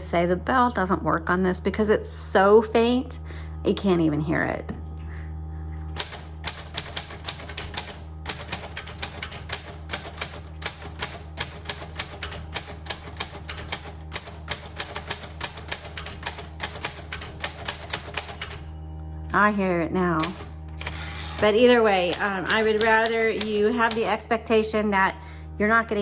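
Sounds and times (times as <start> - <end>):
manual typewriter typing: 6.0 - 18.7, 20.2 - 24.3.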